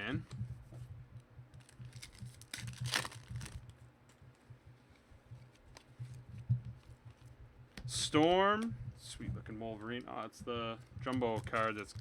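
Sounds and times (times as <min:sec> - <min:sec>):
low steady hum: 0:00.0 - 0:12.0
cards and wrappers rustling: 0:01.6 - 0:03.7, 0:09.7 - 0:12.0.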